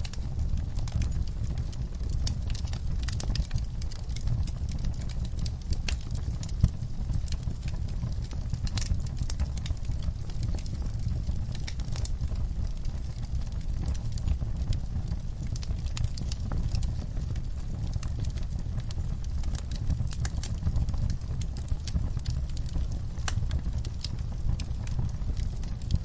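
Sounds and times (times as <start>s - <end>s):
fire low rumble: 0.0s - 26.0s
wood fire crackling and popping: 0.0s - 26.0s.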